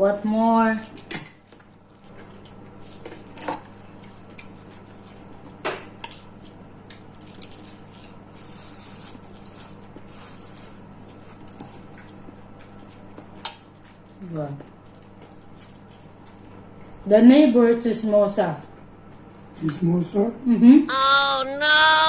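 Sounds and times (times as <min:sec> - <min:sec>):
cutlery clinking on plates: 0:01.0 - 0:01.6.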